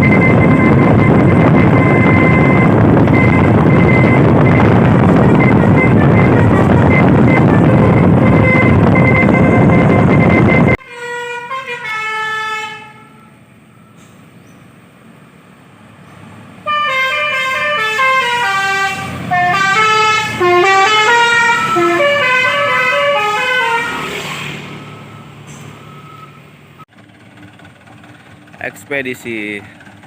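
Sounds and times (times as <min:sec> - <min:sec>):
loud noisy sound: 0:00.0 - 0:10.8
truck musical horn playing tunes: 0:00.0 - 0:13.9, 0:16.6 - 0:26.3.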